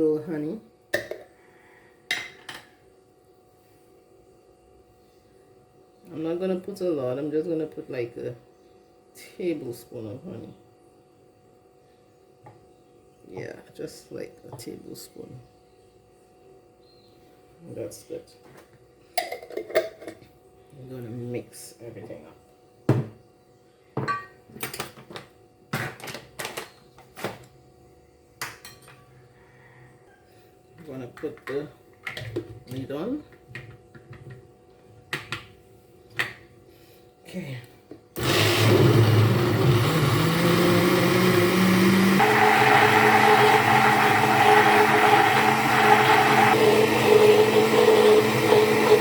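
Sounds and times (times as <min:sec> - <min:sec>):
blender running: 0:38.2 - 0:49.0.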